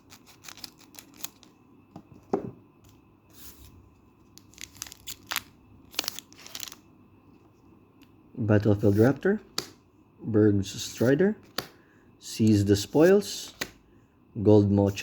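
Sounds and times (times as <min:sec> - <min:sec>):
foil wrapper tearing and crackling: 0:00.0 - 0:01.5, 0:04.4 - 0:06.8.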